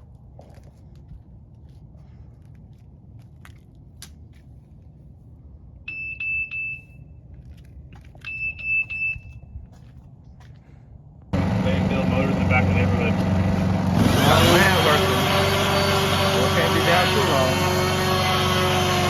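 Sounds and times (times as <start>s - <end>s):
steady low rumble: 0.0s - 5.9s, 9.1s - 15.1s.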